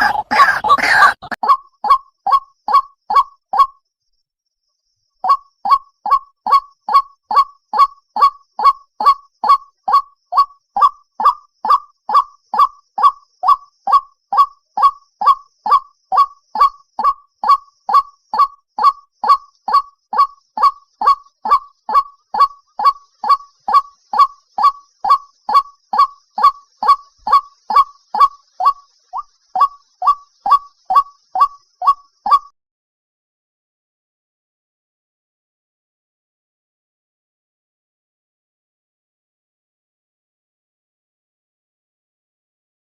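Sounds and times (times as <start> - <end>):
waterhen calling: 0.0 - 3.7, 17.4 - 32.5.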